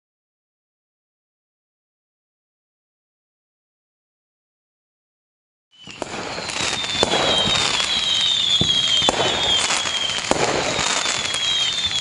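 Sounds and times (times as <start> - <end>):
fireworks whistling: 5.7 - 12.0
fireworks banging and crackling: 5.8 - 12.0.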